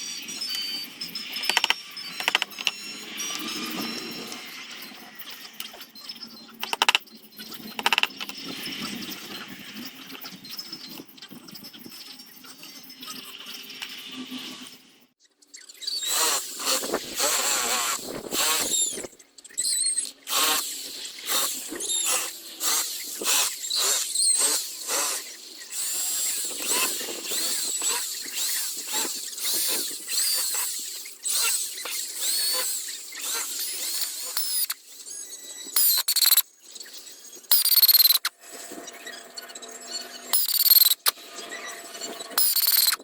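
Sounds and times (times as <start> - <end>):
tool squeaking across hard wood: 1.4 - 3.0, 6.6 - 7.0, 7.7 - 8.4, 32.3 - 34.8, 35.8 - 36.4, 37.5 - 38.3, 40.3 - 41.2, 42.3 - 43.0.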